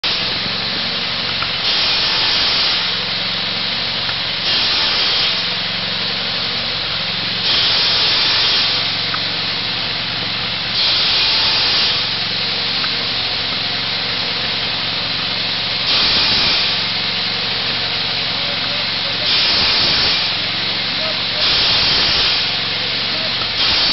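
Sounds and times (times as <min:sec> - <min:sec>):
chainsaw engine running: 0:00.0 - 0:23.9
chain cutting wood hissing: 0:01.4 - 0:03.1, 0:07.4 - 0:09.1, 0:10.7 - 0:12.4, 0:15.8 - 0:17.0, 0:19.1 - 0:23.9.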